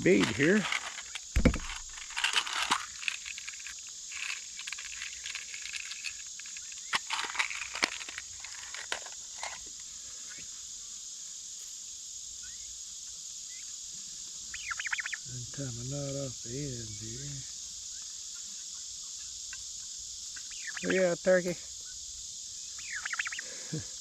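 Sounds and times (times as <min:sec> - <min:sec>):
insects droning: 0:00.0 - 0:24.0
hands clicking beads: 0:00.6 - 0:09.0.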